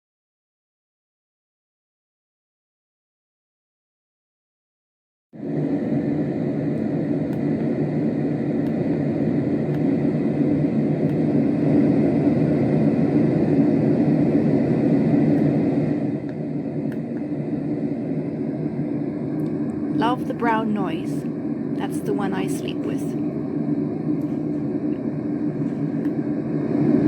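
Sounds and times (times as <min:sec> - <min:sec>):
deep brown noise: 0:05.4 - 0:27.0.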